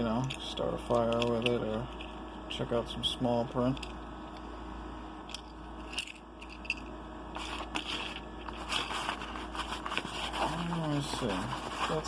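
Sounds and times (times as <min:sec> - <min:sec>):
steady low hum: 0:00.0 - 0:12.0
crackly rustling and scraping: 0:05.4 - 0:12.0.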